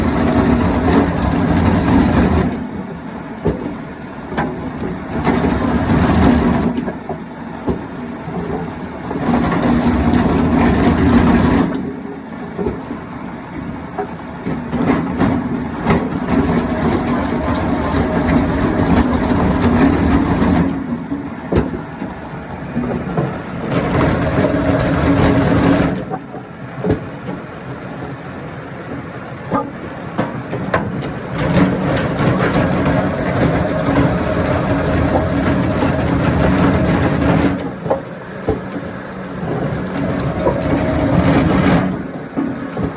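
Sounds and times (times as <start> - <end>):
woodworking machine cutting wood: 5.2 - 6.9, 15.8 - 20.9, 23.6 - 26.2, 31.4 - 42.9.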